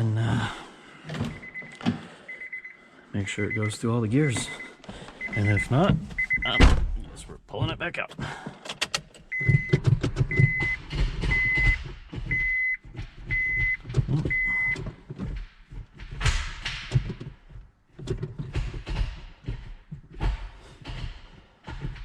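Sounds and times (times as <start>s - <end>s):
clunks and rustling: 1.0s - 2.5s, 4.2s - 22.0s
clicks and thumps inside car: 1.0s - 2.6s, 3.3s - 22.0s
car warning chime beeping: 1.3s - 6.7s, 9.3s - 14.8s.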